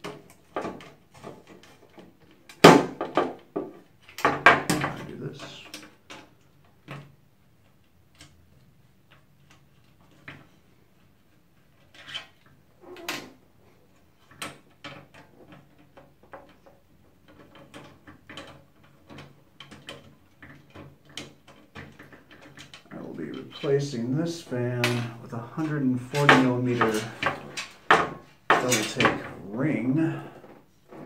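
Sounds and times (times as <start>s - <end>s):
computer case parts knocking: 24.1s - 29.5s.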